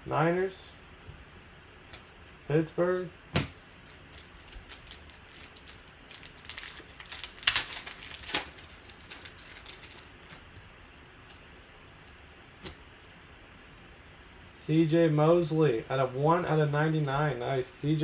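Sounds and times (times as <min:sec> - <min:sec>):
card packaging crinkling: 0:03.7 - 0:10.6.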